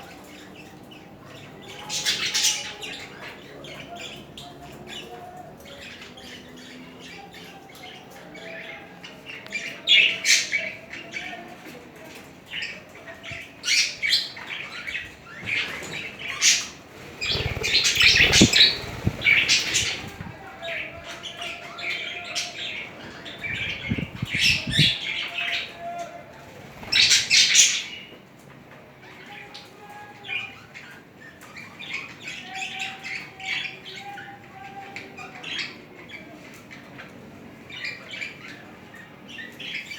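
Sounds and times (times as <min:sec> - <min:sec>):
budgerigars chattering: 0:13.6 - 0:20.3, 0:22.0 - 0:25.6
wings flapping: 0:15.5 - 0:20.4, 0:26.5 - 0:27.6
bird squawking: 0:16.5 - 0:20.3.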